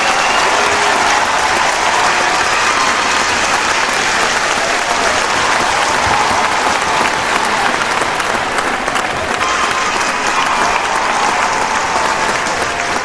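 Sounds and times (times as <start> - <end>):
crowd cheering and calling out: 0.0 - 13.0
crowd clapping: 0.0 - 13.0.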